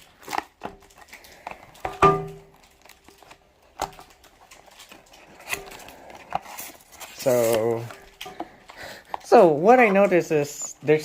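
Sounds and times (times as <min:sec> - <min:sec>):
toy packaging being handled: 0:00.0 - 0:11.0
clicks and knocks: 0:01.8 - 0:02.8.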